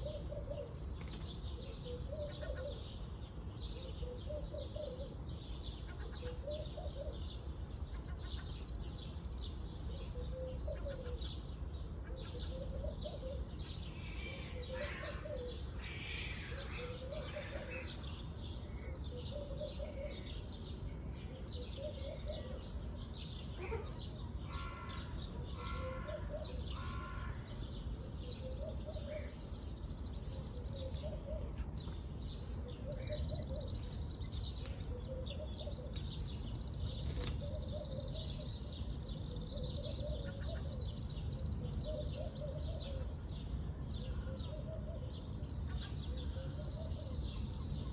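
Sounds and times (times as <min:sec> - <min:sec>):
birds chirping: 0:00.0 - 0:47.9.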